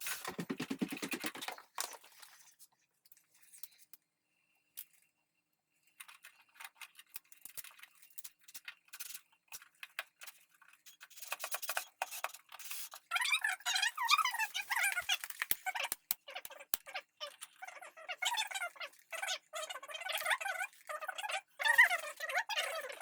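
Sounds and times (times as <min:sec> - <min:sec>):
hands handling small objects: 0:14.4 - 0:17.0.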